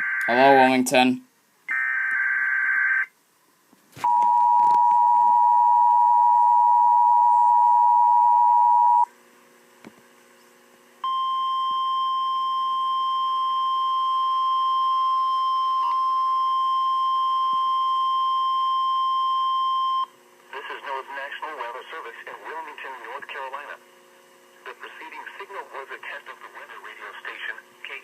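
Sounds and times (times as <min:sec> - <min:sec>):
steady warning alarm tone: 0:04.1 - 0:09.1
two-tone attention signal: 0:11.0 - 0:20.1.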